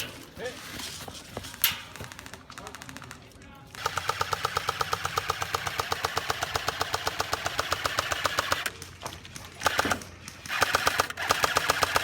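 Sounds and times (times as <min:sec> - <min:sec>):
airsoft gun firing full auto: 0:03.7 - 0:08.7, 0:09.6 - 0:12.0.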